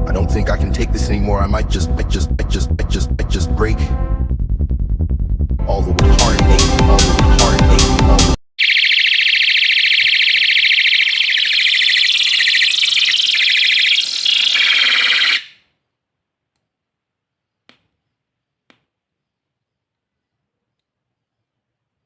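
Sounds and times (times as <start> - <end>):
pulsing electronic siren: 6.0 - 15.6.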